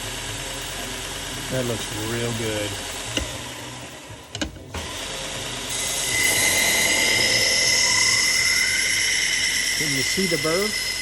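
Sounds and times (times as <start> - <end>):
belt sharpener grinding blade: 0.3 - 11.0.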